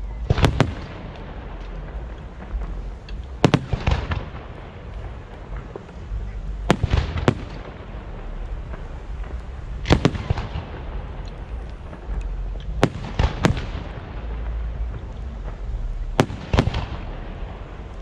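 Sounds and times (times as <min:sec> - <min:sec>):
fireworks bangs: 0:00.0 - 0:18.0
steady low rumble: 0:00.0 - 0:18.0.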